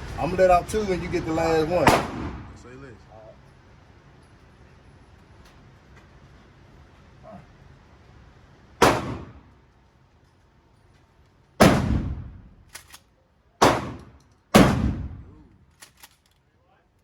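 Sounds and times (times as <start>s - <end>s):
rifle shots with echo: 1.8s - 2.6s, 8.8s - 9.5s, 11.6s - 13.0s, 13.6s - 15.4s.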